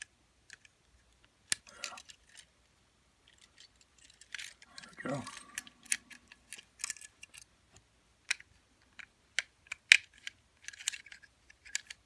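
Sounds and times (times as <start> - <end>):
metallic clicks of padlock tools: 1.5 - 2.5, 3.3 - 7.5, 9.0 - 12.0.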